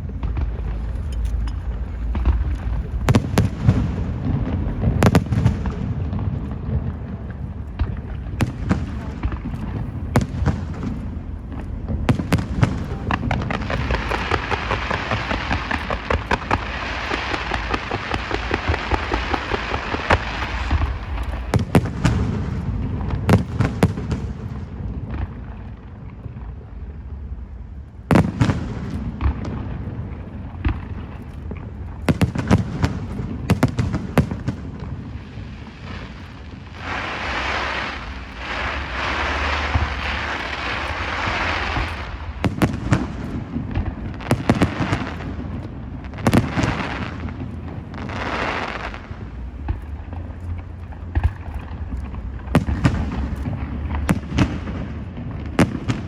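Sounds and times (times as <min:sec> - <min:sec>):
fireworks hissing burst: 0:00.0 - 0:22.8, 0:32.2 - 0:45.5
fireworks bangs: 0:00.0 - 0:56.0
fireworks booms: 0:00.0 - 0:56.0
fireworks crackling shower: 0:00.0 - 0:56.0.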